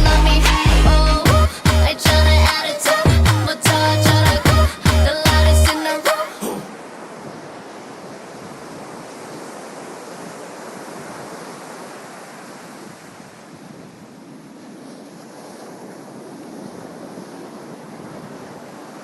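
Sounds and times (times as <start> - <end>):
ocean surf washing ashore: 1.5 - 19.0.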